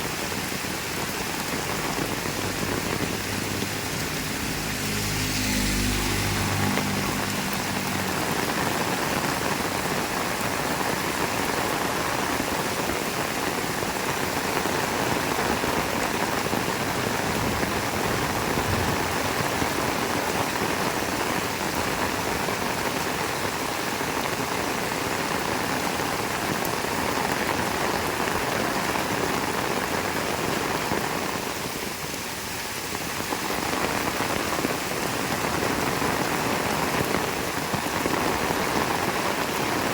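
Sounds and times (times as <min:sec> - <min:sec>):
heavy rain falling: 0:00.0 - 0:39.9
vehicle engine humming: 0:02.4 - 0:09.6.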